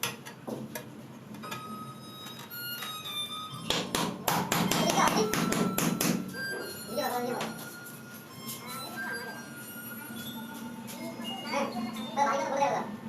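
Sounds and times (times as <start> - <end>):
hard taps on ceramic tiles: 3.7 - 6.2.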